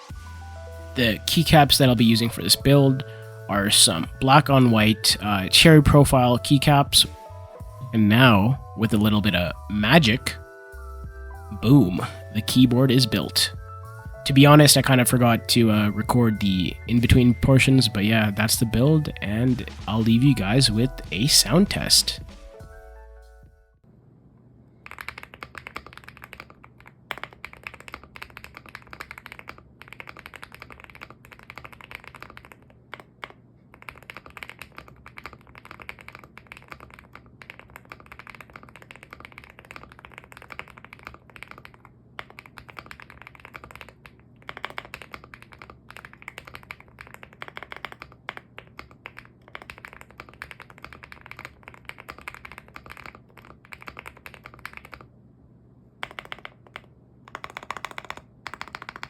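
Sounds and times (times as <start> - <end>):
fast typing on mechanical keyboard: 24.8 - 55.1, 56.0 - 59.0.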